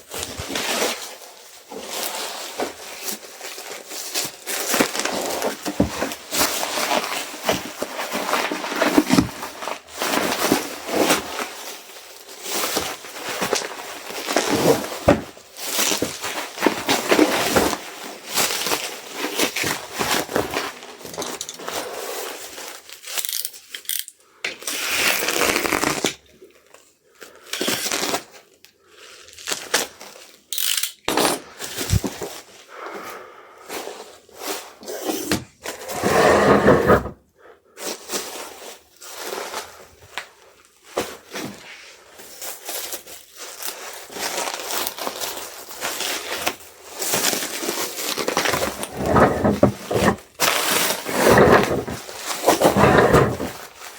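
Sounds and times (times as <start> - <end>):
packing material rustling and crinkling: 0.1 - 30.8, 31.5 - 32.6, 37.8 - 53.9
rasping stretches: 48.6 - 50.3, 51.0 - 53.6.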